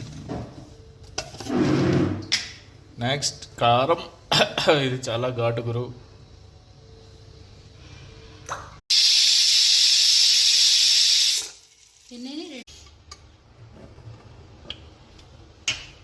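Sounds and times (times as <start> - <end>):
cooking pot hissing: 8.9 - 12.9.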